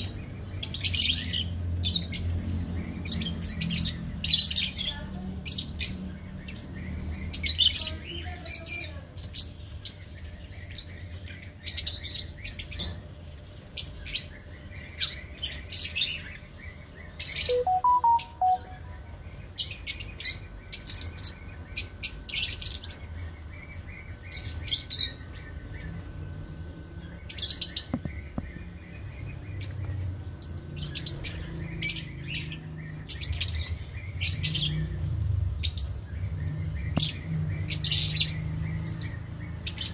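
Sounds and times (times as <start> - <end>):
lovebirds chirping: 16.6 - 19.1.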